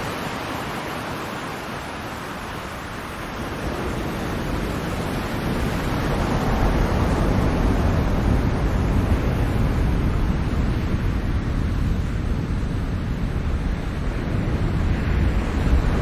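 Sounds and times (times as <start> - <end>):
ocean surf rushing: 0.0 - 16.0.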